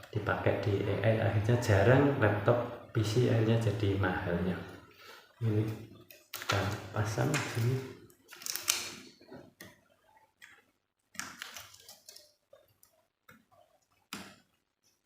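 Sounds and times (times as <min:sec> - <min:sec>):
small parts clicking and scraping: 0:08.2 - 0:09.1, 0:11.2 - 0:13.0.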